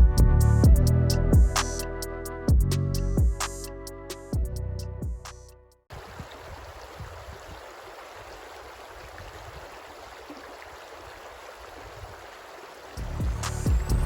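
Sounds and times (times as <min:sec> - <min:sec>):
background music: 0:00.0 - 0:05.8, 0:13.0 - 0:14.0
creek water running: 0:05.9 - 0:14.0.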